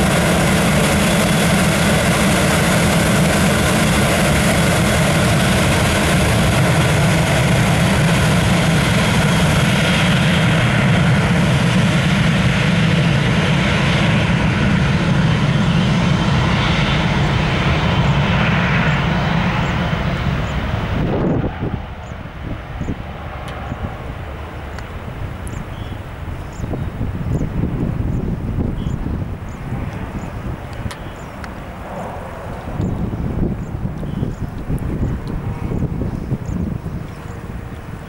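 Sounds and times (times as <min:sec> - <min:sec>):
jet engines at takeoff power: 0:00.0 - 0:38.0.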